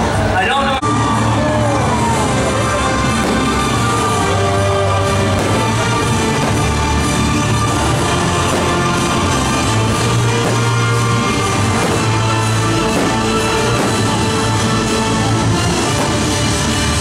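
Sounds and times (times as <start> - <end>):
loud music with bass: 0.0 - 17.0.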